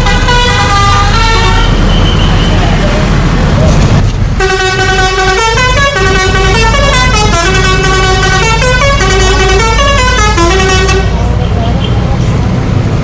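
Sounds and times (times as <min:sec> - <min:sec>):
musical bus horn playing a tune: 0:00.0 - 0:02.6, 0:04.4 - 0:11.2
vehicle rumble: 0:00.0 - 0:13.0.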